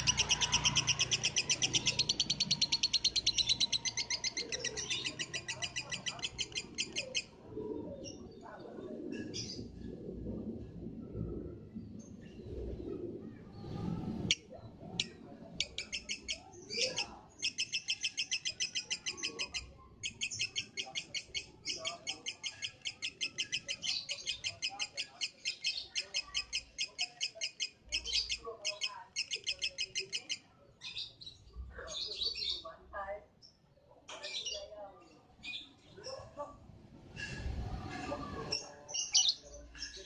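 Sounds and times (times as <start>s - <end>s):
lovebird chattering trill: 0.0s - 7.3s, 15.0s - 30.4s.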